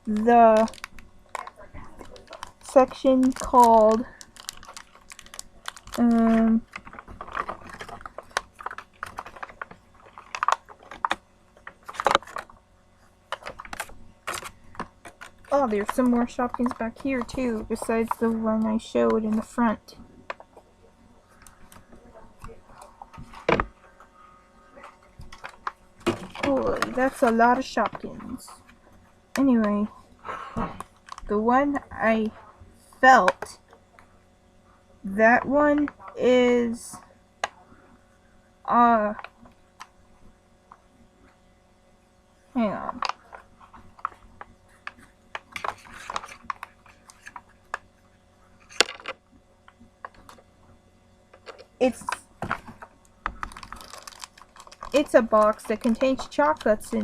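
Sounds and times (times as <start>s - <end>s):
packaging crinkling: 0.0s - 12.6s, 13.3s - 19.6s, 24.8s - 28.6s, 30.8s - 31.3s, 42.8s - 48.0s, 51.4s - 57.0s.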